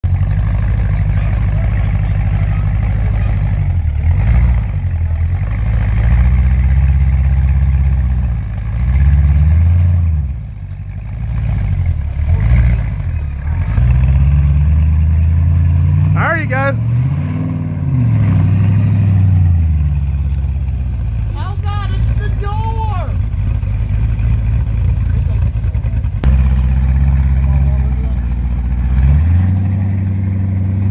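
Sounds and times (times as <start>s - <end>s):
engine running under load: 0.0s - 30.9s.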